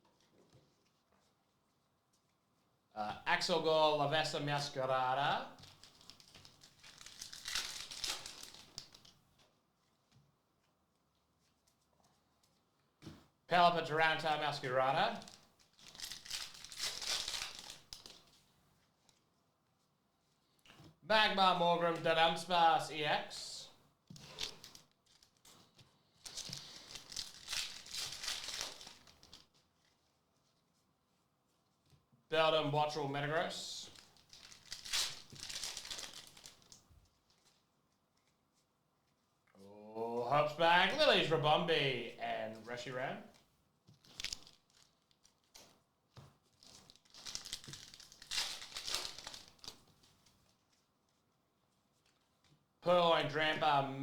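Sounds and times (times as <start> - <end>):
foil wrapper crinkling and tearing: 5.6 - 9.1, 14.3 - 18.3, 26.2 - 30.1, 33.3 - 37.5, 44.0 - 45.8, 46.4 - 50.7.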